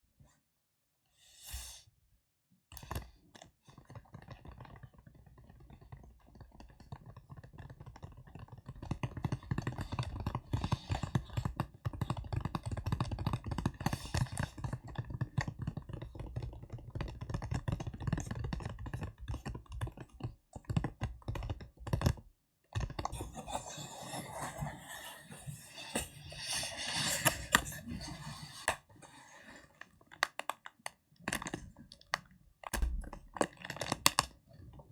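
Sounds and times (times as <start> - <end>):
hands tapping and crackling: 3.8 - 23.2, 30.0 - 34.4.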